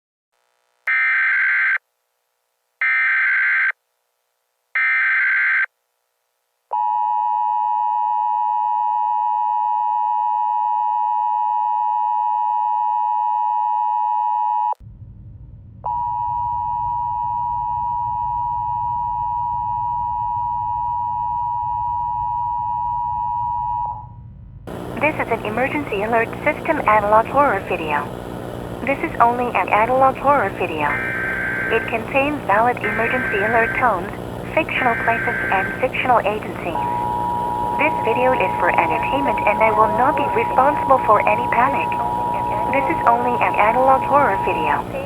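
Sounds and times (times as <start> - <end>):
alert header data bursts: 24.7 - 45.0
low static rumble: 24.7 - 45.0
two-tone attention signal: 28.8 - 45.0.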